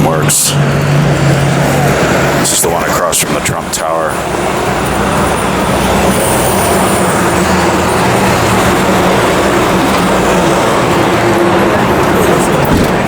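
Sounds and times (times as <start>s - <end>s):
city street traffic: 0.0s - 13.0s
heavy vehicle engine running: 0.0s - 13.0s.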